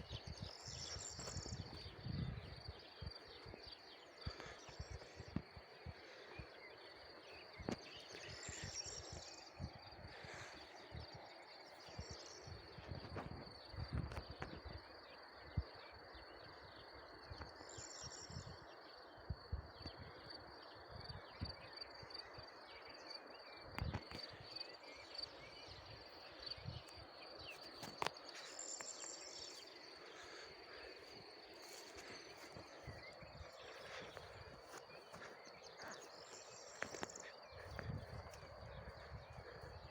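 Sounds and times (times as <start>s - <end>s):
faint outdoor hiss: 0.0s - 39.9s
insects trilling: 0.0s - 39.9s.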